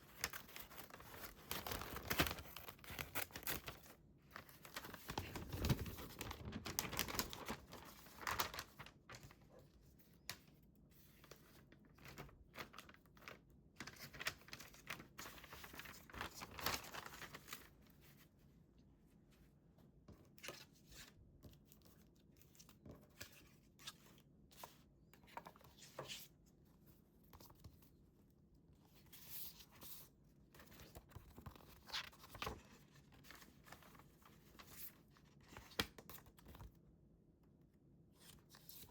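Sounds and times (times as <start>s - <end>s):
paper rustling and tearing: 0.1s - 9.3s, 13.8s - 17.7s.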